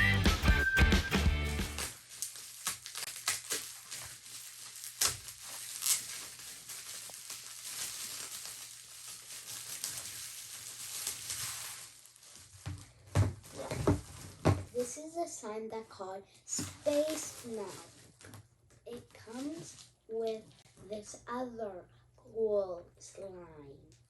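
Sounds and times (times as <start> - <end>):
packaging crinkling and rustling: 1.7 - 15.0, 16.5 - 20.8.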